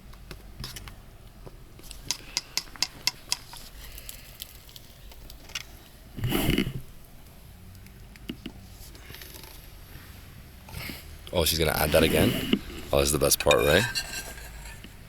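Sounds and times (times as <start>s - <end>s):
utensil scraping a dish: 11.6s - 15.0s.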